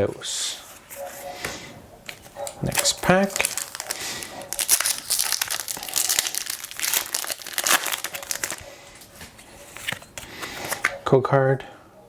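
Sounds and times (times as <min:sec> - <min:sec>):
foil wrapper crinkling: 0:02.6 - 0:09.1.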